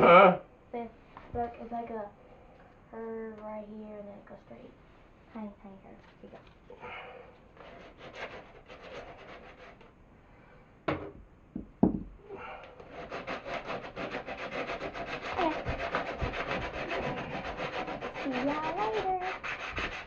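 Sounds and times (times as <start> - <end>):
wood scraping by hand: 7.6 - 9.9, 12.8 - 20.0
sharp knocks: 10.9 - 12.2.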